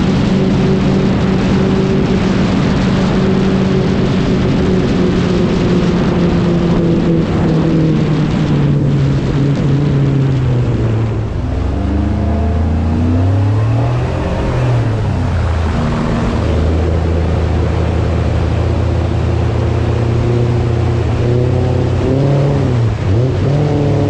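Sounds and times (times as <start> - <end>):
constant rushing noise: 0.0 - 24.0
engine humming: 0.0 - 24.0
second engine rising in pitch: 9.4 - 24.0.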